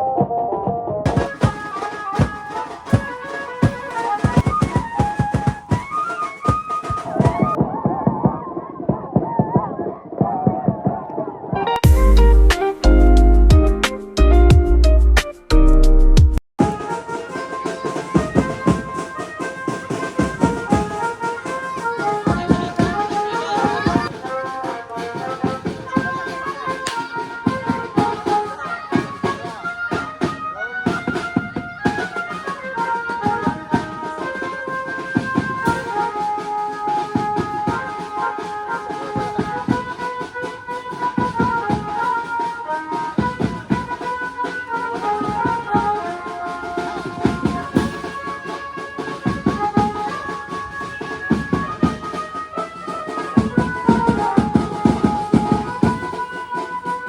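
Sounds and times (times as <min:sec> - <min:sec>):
dance music with driving drums: 0:01.1 - 0:07.6
bright stepping melody: 0:11.6 - 0:16.8.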